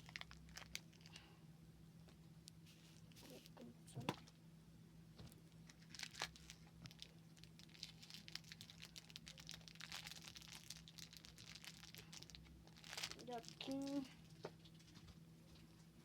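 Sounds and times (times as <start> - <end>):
plastic packaging crinkling: 0.0 - 1.3, 5.6 - 15.0
steady low hum: 0.0 - 16.0.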